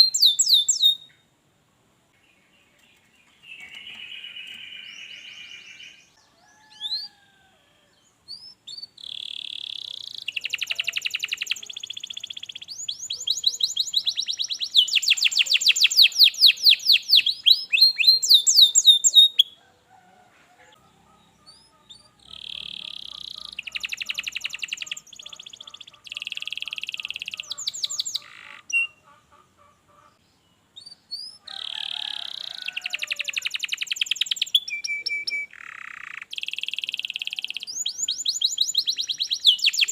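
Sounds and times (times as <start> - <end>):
canary singing trills: 0.0 - 1.3, 2.3 - 7.3, 8.3 - 19.6, 20.7 - 30.2, 30.8 - 39.9.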